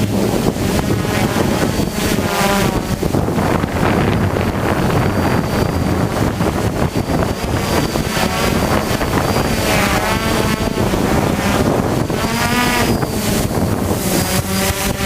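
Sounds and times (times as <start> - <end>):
wavering tones: 0.0 - 15.0
wind buffeting the microphone: 0.0 - 15.0.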